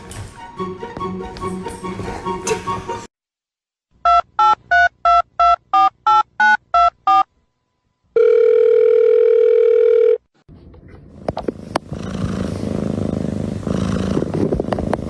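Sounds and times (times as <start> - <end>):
steady phone tone: 8.2 - 10.2.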